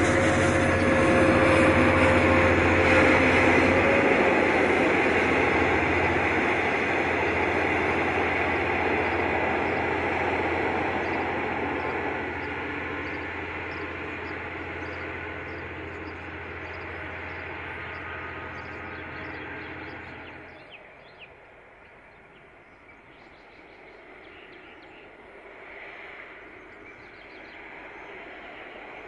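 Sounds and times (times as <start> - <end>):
diesel locomotive passing: 0.0 - 29.0
low rumble of approaching train: 0.0 - 29.0
birds chirping: 7.1 - 25.2, 26.4 - 29.0.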